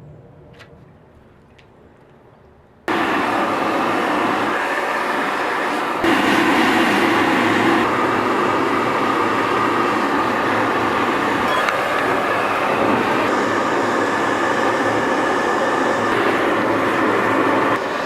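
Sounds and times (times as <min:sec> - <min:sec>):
furnace roaring: 0:02.8 - 0:18.0.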